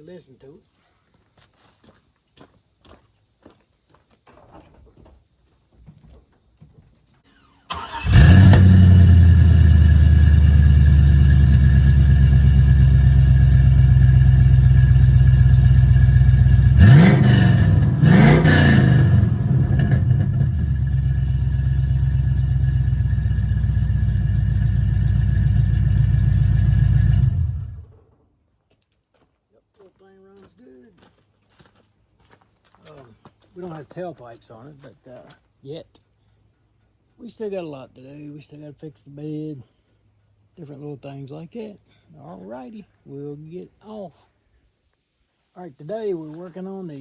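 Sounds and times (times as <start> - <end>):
car engine starting and idling: 7.3 - 28.1
engine revving: 7.7 - 28.0.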